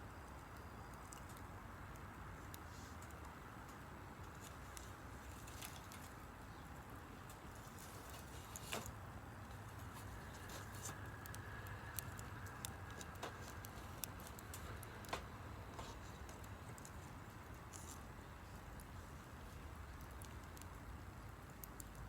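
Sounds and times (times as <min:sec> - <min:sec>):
low background hum: 0:00.0 - 0:22.0
wood fire crackling: 0:00.5 - 0:22.0.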